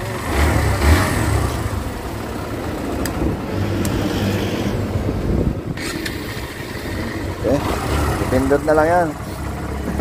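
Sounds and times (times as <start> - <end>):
motorcycle engine idling: 0.0 - 3.5, 5.8 - 10.0.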